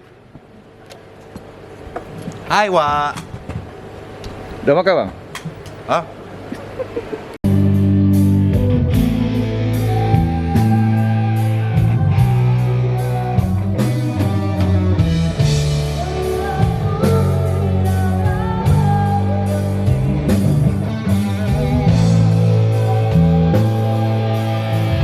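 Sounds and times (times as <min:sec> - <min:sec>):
electric guitar: 0:07.4 - 0:25.0
heavy bass line: 0:07.4 - 0:25.0
drum kit beat: 0:07.5 - 0:25.0.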